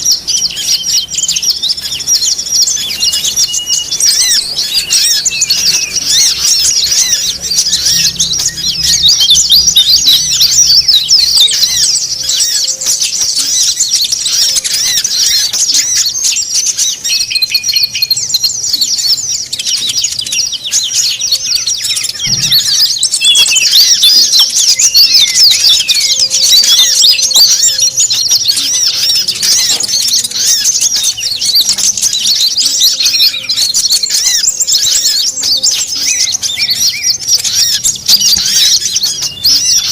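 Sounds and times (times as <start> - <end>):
songbirds chirping and twittering: 0.0 - 39.9
low thump: 22.3 - 22.8.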